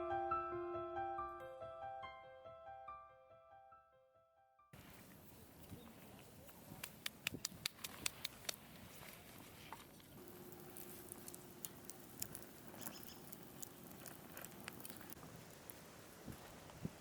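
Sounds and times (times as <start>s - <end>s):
campfire crackling: 6.6s - 17.0s.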